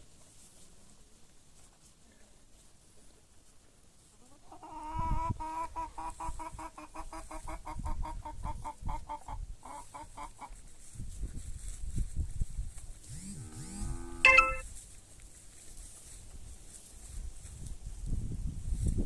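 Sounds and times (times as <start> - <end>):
hen cackling: 4.4 - 10.5.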